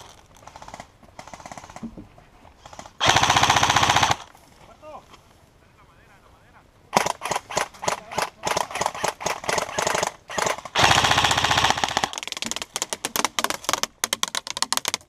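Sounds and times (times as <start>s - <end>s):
airsoft gun full-auto burst: 2.7s - 4.3s, 6.9s - 12.9s.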